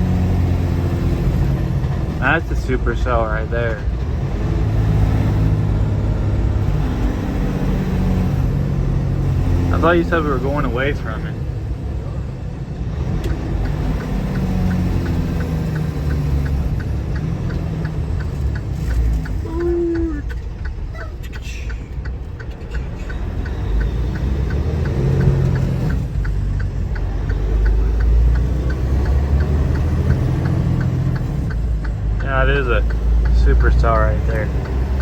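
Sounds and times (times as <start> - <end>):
car road noise: 0.0 - 35.0
light regular ticking: 12.8 - 35.0.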